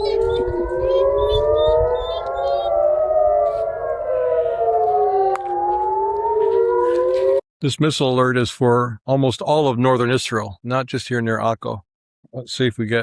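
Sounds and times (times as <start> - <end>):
civil-defense sirens wailing: 0.0 - 7.4.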